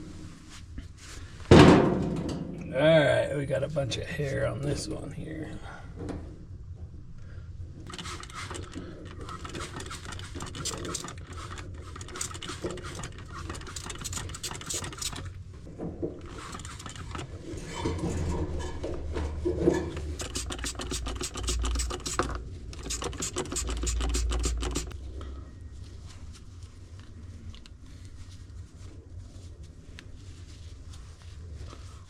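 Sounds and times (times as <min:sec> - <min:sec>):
hand scratching and scraping: 0:07.9 - 0:15.4, 0:16.2 - 0:25.0, 0:25.7 - 0:32.0.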